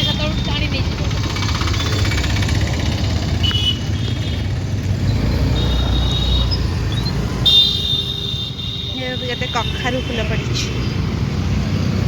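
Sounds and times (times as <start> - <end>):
motorcycle road and engine noise: 0.0 - 12.0.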